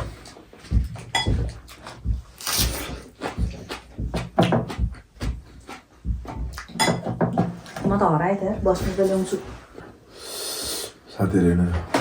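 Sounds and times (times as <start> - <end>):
person eating soup: 0.0 - 7.8
hissy slurp: 2.4 - 3.4, 10.1 - 11.1.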